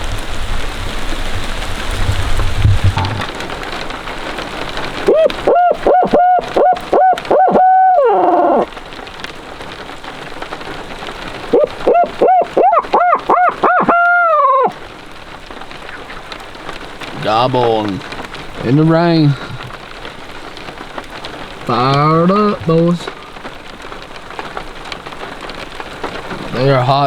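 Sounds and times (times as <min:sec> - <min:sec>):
heavy rain: 0:00.0 - 0:27.0
owl hooting: 0:05.1 - 0:08.7, 0:11.5 - 0:14.9.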